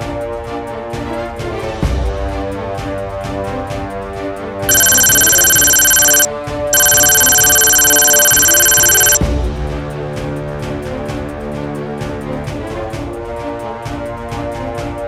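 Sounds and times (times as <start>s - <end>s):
electronic ringing tone: 4.7s - 9.2s.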